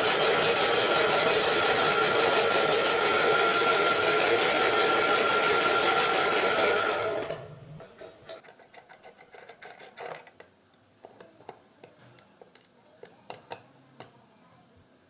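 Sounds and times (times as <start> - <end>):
meat grinder motor whining: 0.0 - 7.7.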